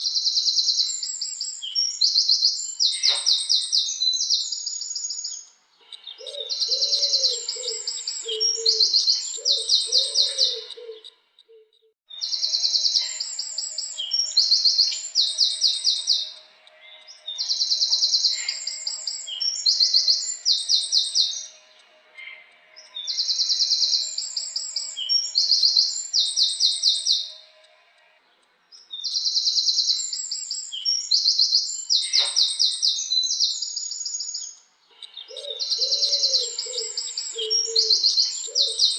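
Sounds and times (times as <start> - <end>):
wren singing high trills: 0.0 - 11.1, 12.1 - 38.9
soft curving bird calls: 0.2 - 27.4.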